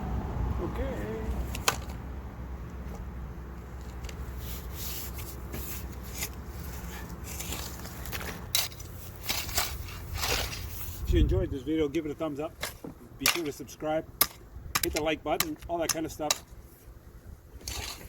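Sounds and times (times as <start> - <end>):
steady low rumble: 0.0 - 4.4, 5.3 - 15.9
shovel scraping in soil: 3.8 - 11.2, 17.6 - 18.0.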